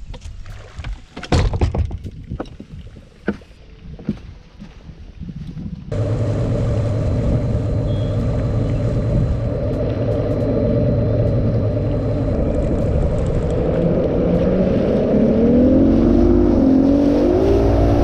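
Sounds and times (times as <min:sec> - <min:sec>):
outboard engine hum: 0:05.9 - 0:18.0
rushing water and wind: 0:05.9 - 0:18.0.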